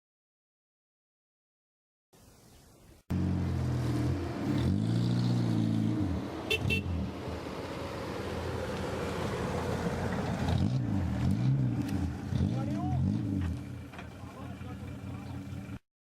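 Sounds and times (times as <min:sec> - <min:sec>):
road noise: 0:02.2 - 0:15.8
car engine revving: 0:03.1 - 0:15.8
car horn toots: 0:06.5 - 0:07.0.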